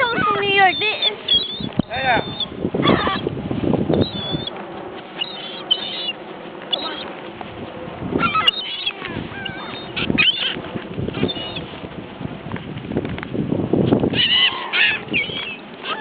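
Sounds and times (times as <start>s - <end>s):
seagulls squawking: 0.0s - 3.3s, 3.9s - 7.1s, 8.1s - 11.7s, 14.1s - 16.0s.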